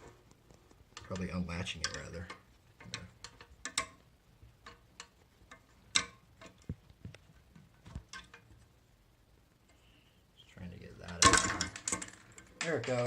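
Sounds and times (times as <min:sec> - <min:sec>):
small metal parts clicking: 0:01.0 - 0:04.0.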